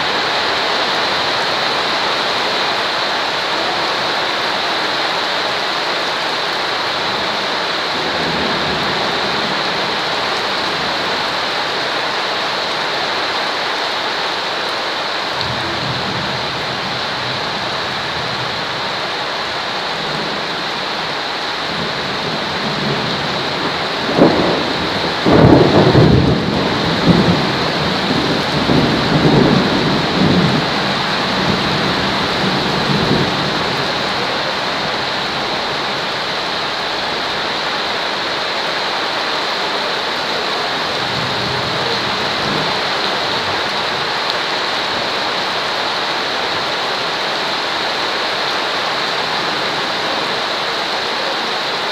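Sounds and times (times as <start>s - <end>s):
heavy rain hiss: 0.0s - 51.9s
thunder rumbling: 6.7s - 12.3s, 15.4s - 38.3s, 39.7s - 45.8s.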